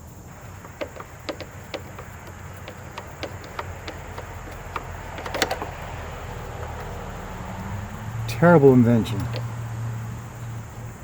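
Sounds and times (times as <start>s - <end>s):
hand tool clicking on screws: 0.3s - 7.0s, 9.2s - 9.5s.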